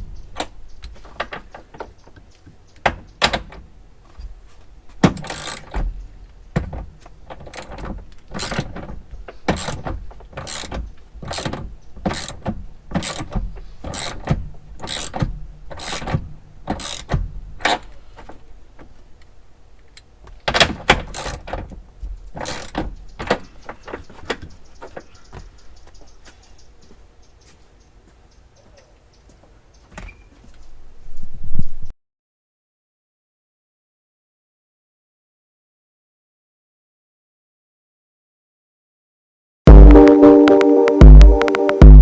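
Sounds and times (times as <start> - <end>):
ratchet wrench clicking: 16.7 - 17.1.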